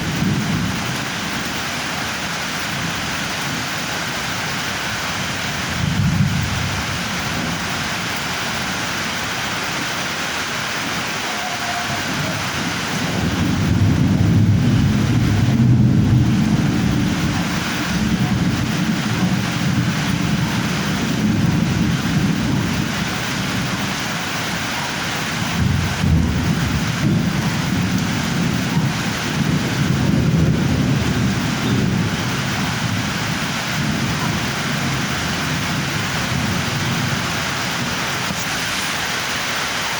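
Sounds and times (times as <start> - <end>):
low rumble of thunder: 0.0 - 10.0, 11.8 - 39.1
heavy rain hissing: 0.0 - 39.9
wind buffeting microphone: 11.9 - 39.4
low rumble: 12.2 - 24.0.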